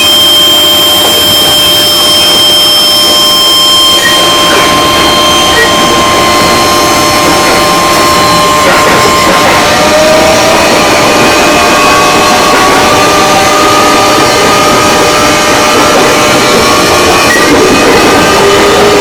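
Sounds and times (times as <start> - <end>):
electric motor whine rising: 0.0 - 19.0
train running noise: 0.0 - 19.0.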